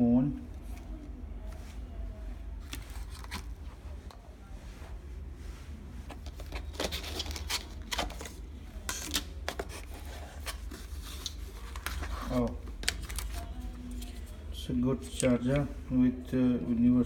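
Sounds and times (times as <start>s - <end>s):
packaging rustling and clicking: 2.6s - 3.6s, 6.1s - 14.2s.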